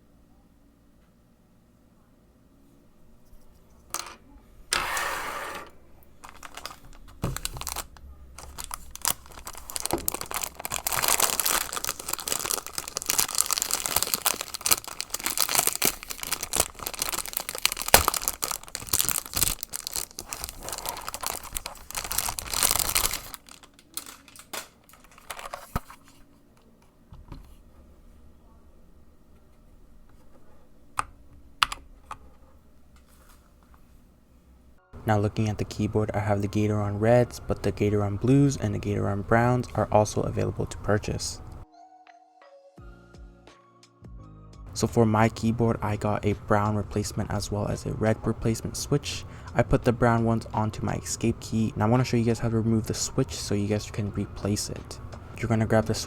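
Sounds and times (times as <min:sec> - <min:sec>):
plastic tearing: 0:06.2 - 0:26.2
plastic packaging crinkling: 0:06.2 - 0:26.3.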